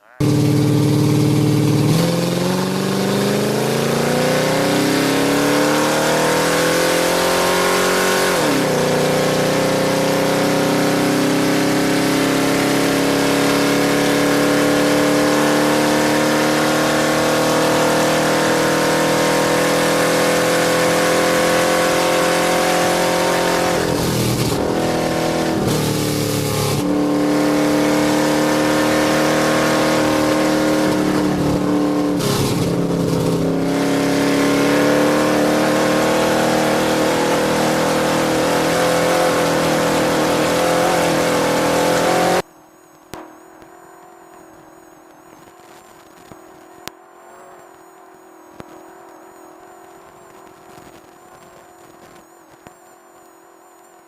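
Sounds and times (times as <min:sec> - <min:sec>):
race truck engine running hard: 0:00.0 - 0:42.5.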